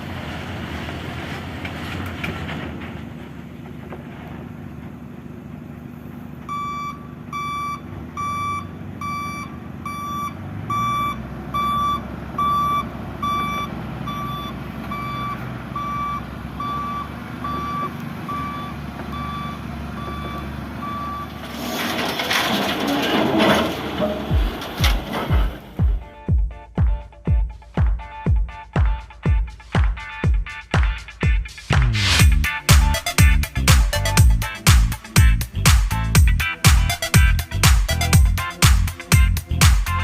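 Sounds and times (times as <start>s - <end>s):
diesel engine running: 0.0s - 26.1s, 31.7s - 40.0s
reversing alarm beeping: 6.5s - 21.4s.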